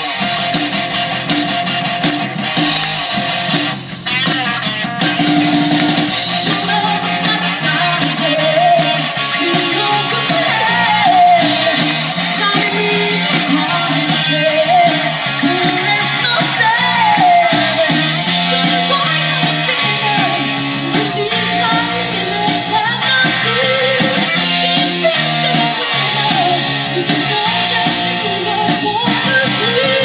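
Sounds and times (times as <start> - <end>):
guitar: 0.0 - 30.0
repeating bass line: 0.0 - 30.0
person singing: 6.3 - 30.0.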